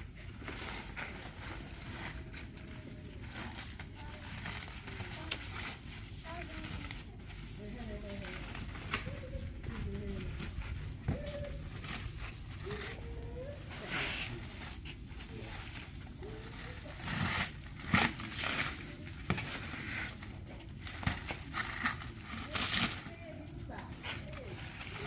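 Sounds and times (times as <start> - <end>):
plastic packaging crinkling and tearing: 0.0 - 25.0.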